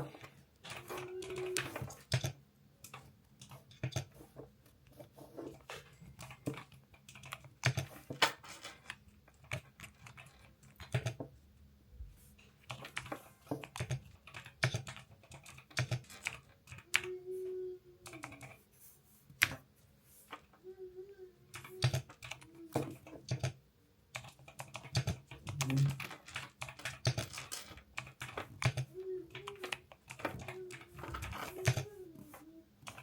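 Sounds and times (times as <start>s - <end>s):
mechanical keyboard typing: 0.0s - 4.2s, 6.2s - 8.1s, 8.8s - 11.3s, 12.6s - 17.2s, 18.0s - 18.6s, 21.5s - 32.2s.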